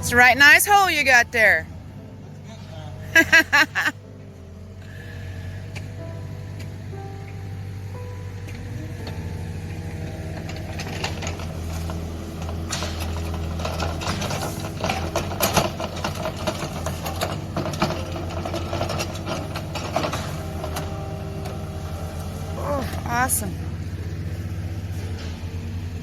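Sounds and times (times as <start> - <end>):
diesel engine running: 0.0 - 26.0
metallic clanks and rattles: 8.3 - 26.0.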